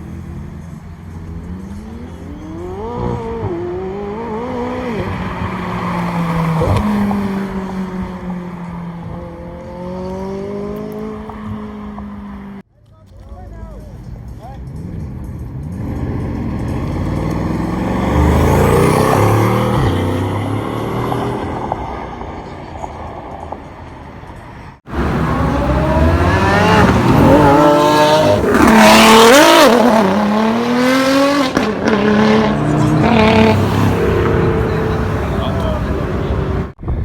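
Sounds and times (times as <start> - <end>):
supercar engine passing: 0.0 - 12.6, 15.6 - 22.5, 24.9 - 36.8
supercar engine revving hard: 15.8 - 21.4, 24.9 - 36.8.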